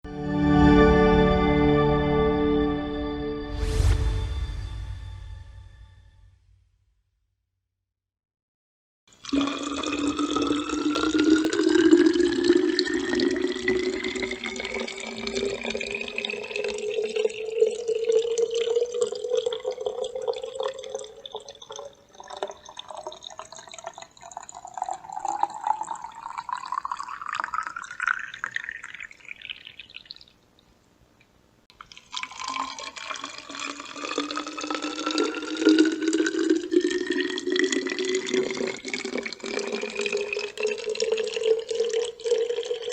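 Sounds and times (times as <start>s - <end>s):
water pouring into a bottle: 9.1s - 30.5s, 31.7s - 42.9s.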